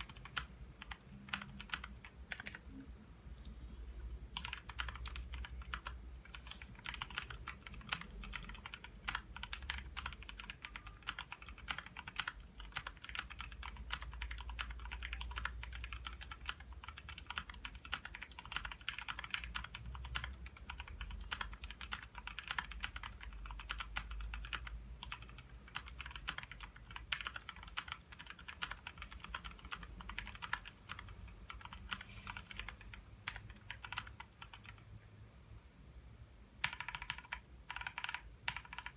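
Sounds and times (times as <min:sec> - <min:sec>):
fast typing on mechanical keyboard: 0:00.0 - 0:02.7, 0:04.3 - 0:34.9, 0:36.6 - 0:38.9.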